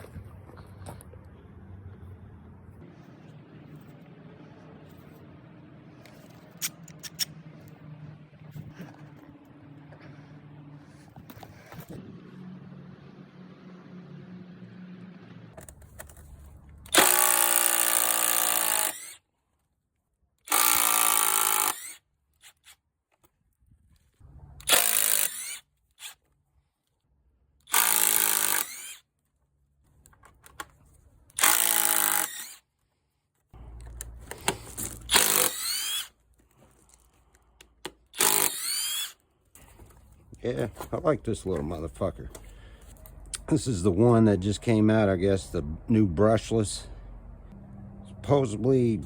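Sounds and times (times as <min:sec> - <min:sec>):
cordless impact driver bursts: 0:16.9 - 0:19.2, 0:20.5 - 0:22.7, 0:24.6 - 0:26.2, 0:27.7 - 0:29.0, 0:31.4 - 0:32.6, 0:34.5 - 0:36.1, 0:38.1 - 0:39.2.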